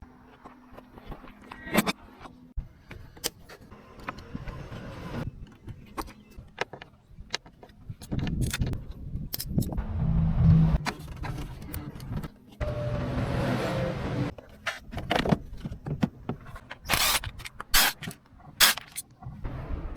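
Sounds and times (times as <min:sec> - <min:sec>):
small car engine running: 0:12.6 - 0:14.3.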